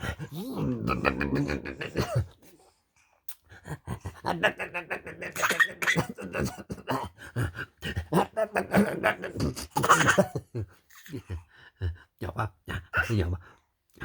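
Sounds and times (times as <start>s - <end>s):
baby coughing: 5.4s - 6.6s.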